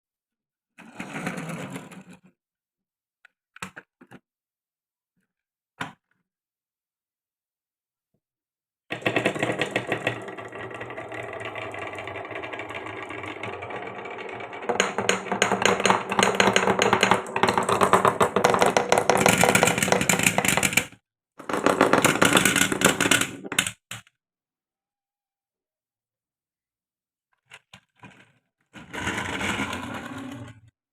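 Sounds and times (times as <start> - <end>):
marbles clattering down wooden run: 8.9 - 23.6.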